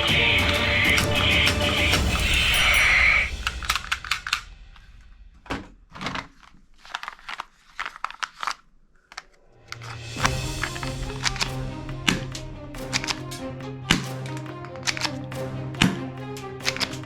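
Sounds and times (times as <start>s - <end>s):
music: 0.0s - 4.8s, 9.5s - 17.0s.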